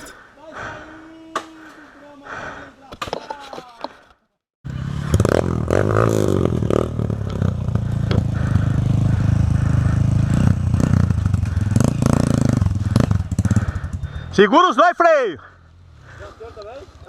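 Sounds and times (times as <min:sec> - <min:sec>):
motorcycle engine running: 0:04.7 - 0:14.5.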